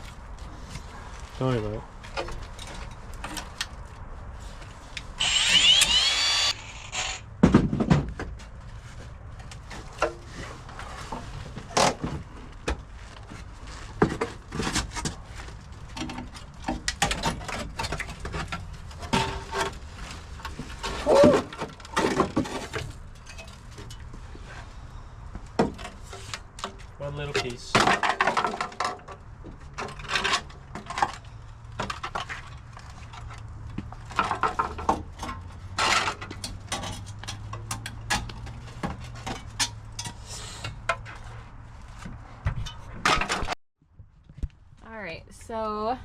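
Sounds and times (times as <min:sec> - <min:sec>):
shrill screech: 0:05.2 - 0:07.2
metal and tools knocking and clanking: 0:14.0 - 0:19.8, 0:25.4 - 0:41.4, 0:42.0 - 0:43.6.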